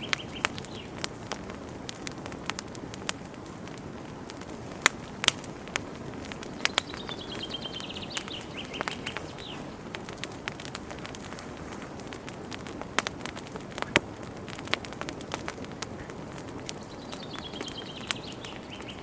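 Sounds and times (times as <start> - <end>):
campfire crackling and popping: 0.0 - 19.0
bird singing a falling trill: 6.6 - 9.6, 16.8 - 19.0.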